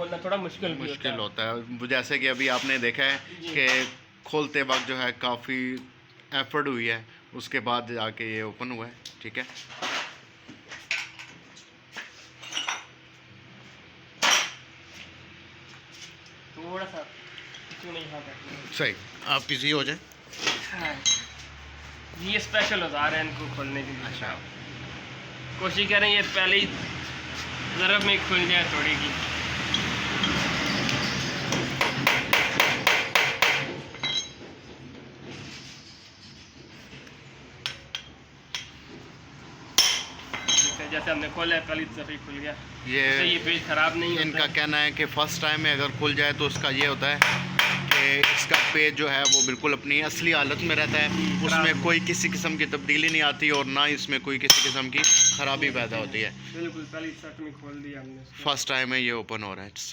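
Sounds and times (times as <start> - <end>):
metallic ring: 20.9 - 21.4, 33.9 - 34.4, 39.8 - 40.9, 49.2 - 49.8, 54.5 - 55.6
hammer striking impact driver: 31.5 - 33.8, 46.8 - 48.8
metal hand tools clinking: 39.8 - 40.9, 49.2 - 49.6, 54.5 - 55.5.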